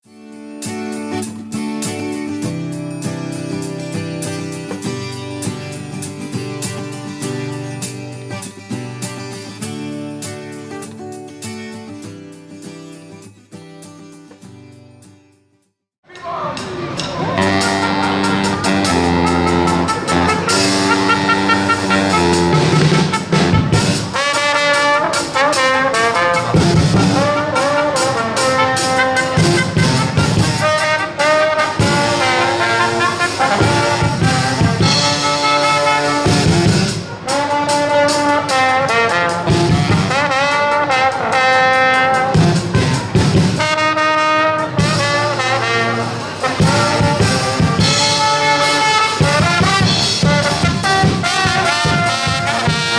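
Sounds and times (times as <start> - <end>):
brass band playing: 17.1 - 52.9.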